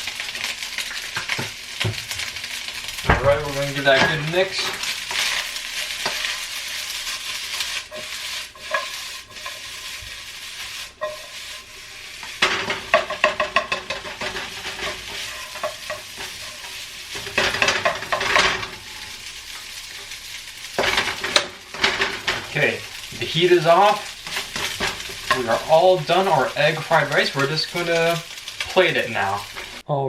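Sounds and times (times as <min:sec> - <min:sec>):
rice sizzling in a hot pan: 0:00.0 - 0:29.9.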